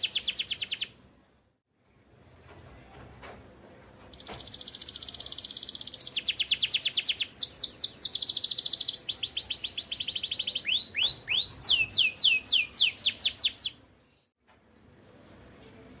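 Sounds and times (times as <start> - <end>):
canary singing: 0.0 - 1.0, 3.7 - 14.3.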